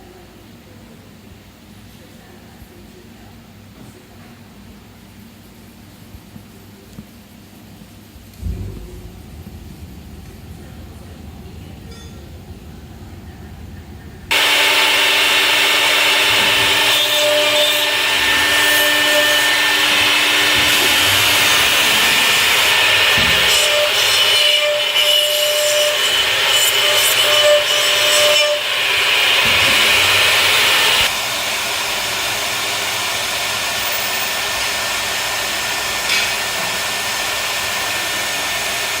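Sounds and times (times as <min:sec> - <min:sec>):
router cutting wood: 0:14.3 - 0:39.0.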